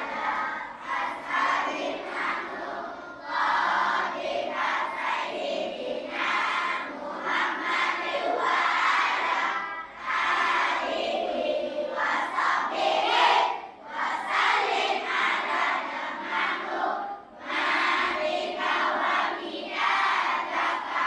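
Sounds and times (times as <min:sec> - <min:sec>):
children chanting in unison: 0:00.0 - 0:21.0.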